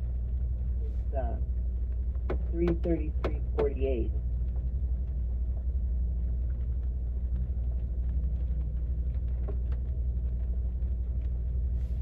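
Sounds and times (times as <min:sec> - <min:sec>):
car interior rumble: 0:00.0 - 0:12.0
faint light ticks: 0:03.6 - 0:12.0.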